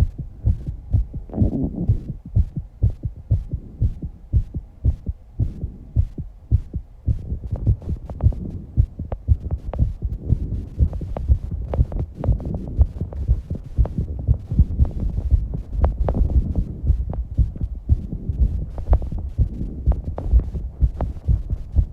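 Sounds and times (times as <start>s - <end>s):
fast heartbeat thumps: 0.0s - 21.9s.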